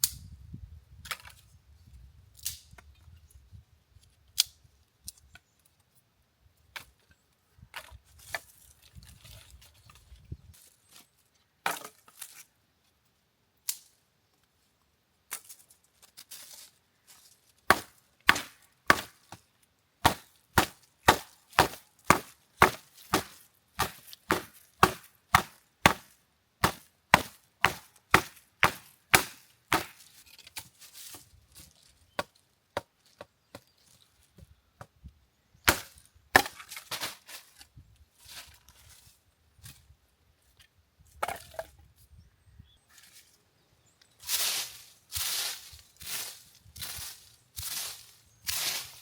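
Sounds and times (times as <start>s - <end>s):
wood chopping strikes: 17.7s - 19.4s, 20.0s - 30.7s, 35.6s - 37.2s.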